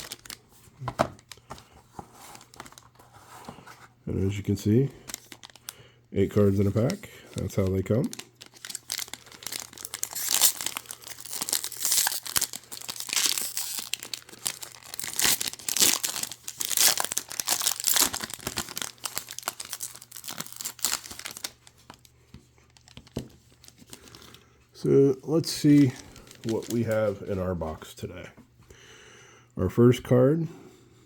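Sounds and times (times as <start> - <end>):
wrapper crinkling and tearing: 0.0 - 1.5, 4.8 - 24.4, 25.5 - 27.2.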